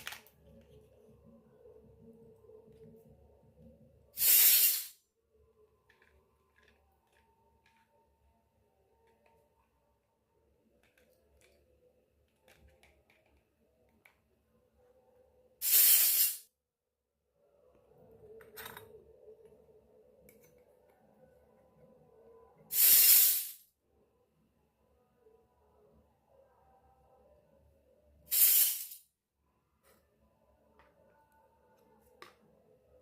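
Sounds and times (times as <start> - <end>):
short loud hissing sprays: 4.2 - 5.0, 15.6 - 16.5, 22.7 - 23.6, 28.3 - 29.0.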